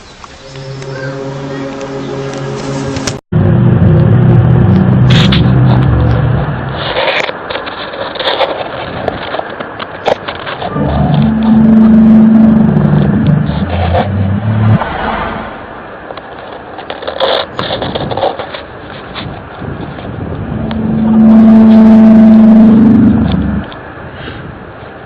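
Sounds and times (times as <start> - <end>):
loud low drone: 0.0 - 6.8, 10.6 - 15.9, 20.1 - 24.0
scraping and clicking noise: 4.7 - 14.9, 16.0 - 23.9.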